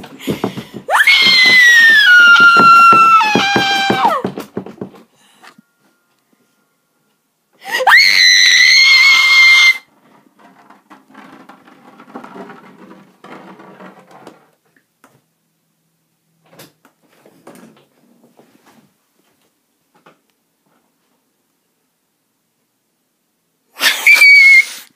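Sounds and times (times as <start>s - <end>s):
high-pitched scream: 0.9s - 4.3s, 7.7s - 9.9s, 23.8s - 24.9s
rustling and scraping: 9.7s - 15.3s, 16.5s - 21.2s.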